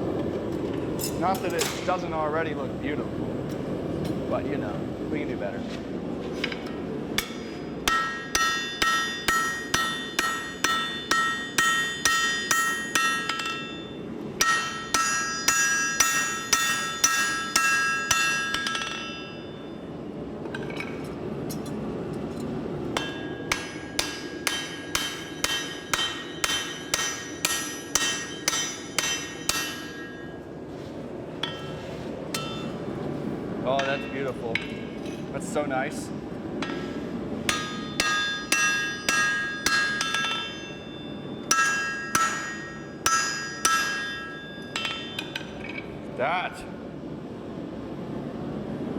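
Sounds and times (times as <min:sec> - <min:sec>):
hammer striking metal on anvil: 0:07.2 - 0:19.8, 0:22.9 - 0:30.5, 0:31.4 - 0:32.9, 0:33.8 - 0:35.3, 0:36.6 - 0:45.9.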